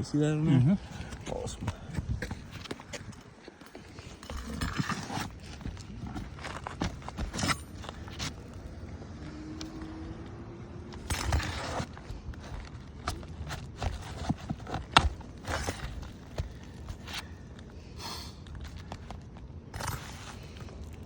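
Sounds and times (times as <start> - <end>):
knocks and scrapes on roof: 4.3 - 8.4, 11.2 - 17.3.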